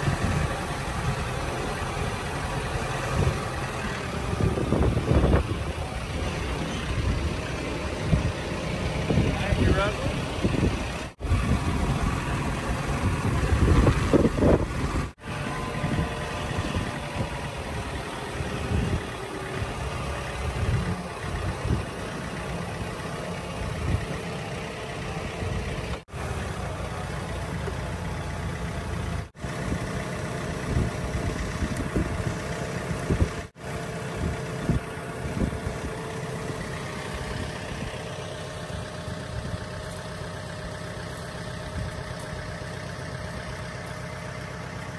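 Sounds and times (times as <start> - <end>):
tractor engine idling: 0.0 - 44.9
wind rumbling on microphone: 4.2 - 15.1, 30.6 - 33.5, 34.2 - 36.0.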